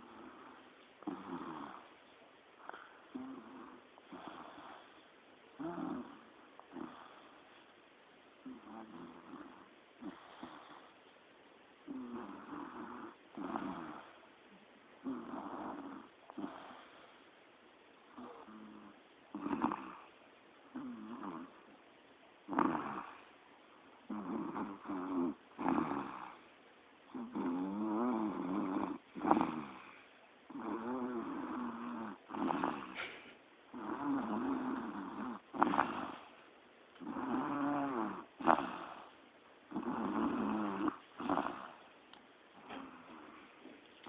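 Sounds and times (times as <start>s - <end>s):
person snoring: 0.0s - 1.9s, 2.7s - 4.9s, 5.6s - 7.3s, 8.4s - 10.9s, 11.9s - 14.2s, 15.0s - 17.0s, 18.2s - 20.0s, 20.7s - 21.5s, 22.5s - 23.2s, 24.1s - 26.4s, 27.1s - 36.3s, 37.0s - 41.8s.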